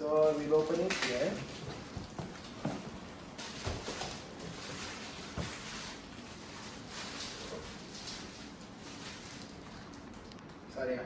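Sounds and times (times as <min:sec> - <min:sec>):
plastic wrapping crinkling: 0:00.0 - 0:10.7.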